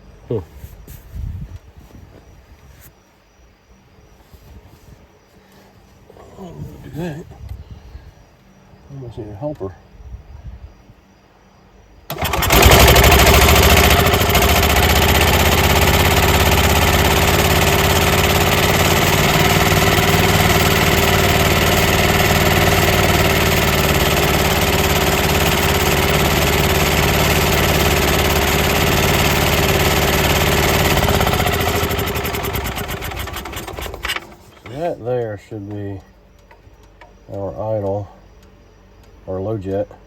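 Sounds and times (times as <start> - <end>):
golf cart engine running: 12.1 - 37.8.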